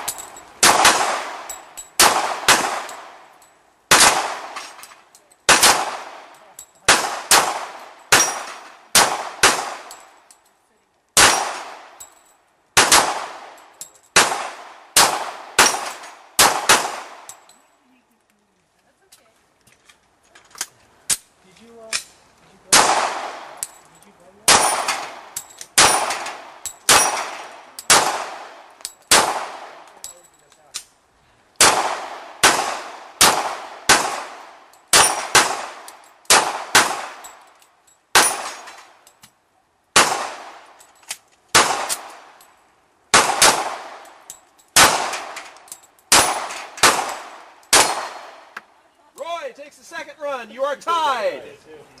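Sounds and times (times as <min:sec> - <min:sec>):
gunshots ringing on steel plates: 0:05.4 - 0:10.1, 0:11.2 - 0:12.2, 0:12.8 - 0:17.5, 0:24.4 - 0:30.3, 0:31.6 - 0:37.4, 0:38.1 - 0:38.9, 0:43.1 - 0:48.4.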